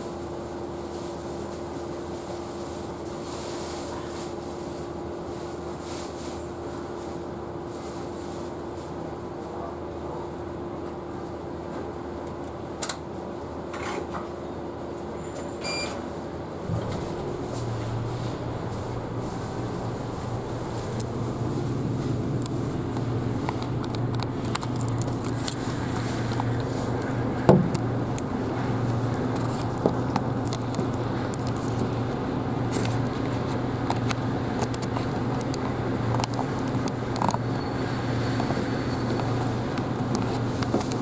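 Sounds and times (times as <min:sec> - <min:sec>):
bus cabin low hum: 0:14.4 - 0:41.0
body rattles and clicks: 0:16.7 - 0:37.5
loud knock: 0:27.5 - 0:27.7.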